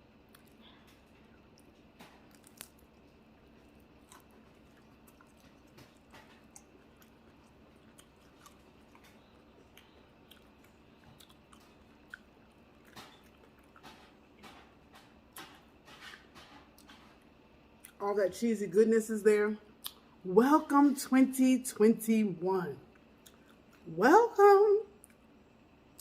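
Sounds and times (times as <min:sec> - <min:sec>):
chewing crunchy food: 0:00.1 - 0:18.0, 0:22.9 - 0:23.9.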